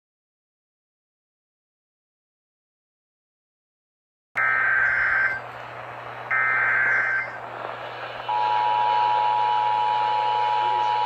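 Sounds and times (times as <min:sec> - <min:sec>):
two-tone attention signal: 0:04.4 - 0:05.4, 0:06.3 - 0:07.4, 0:08.3 - 0:11.0
radio hiss: 0:05.4 - 0:11.0
screechy data bursts: 0:06.3 - 0:07.5.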